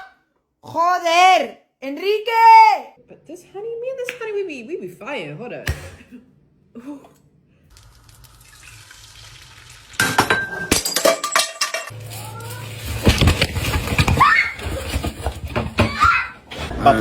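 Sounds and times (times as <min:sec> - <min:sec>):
kitchenware clattering: 0:10.0 - 0:16.8.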